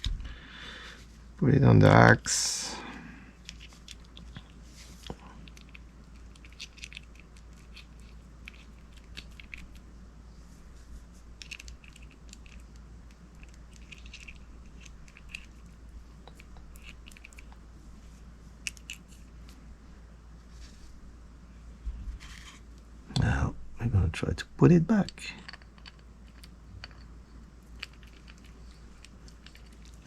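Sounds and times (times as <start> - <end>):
steady low hum: 0.0 - 30.0
metal parts clicking: 25.0 - 27.1.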